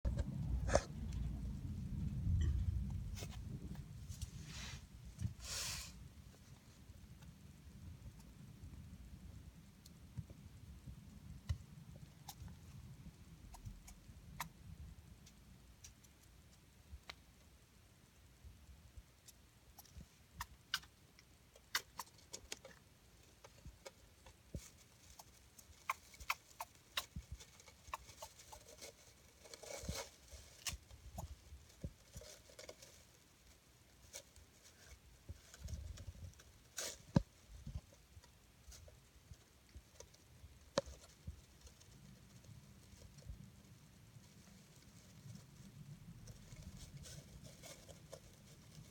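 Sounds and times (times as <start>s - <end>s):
hamster squeaking: 19.8s - 21.0s, 21.6s - 22.7s, 25.1s - 31.4s.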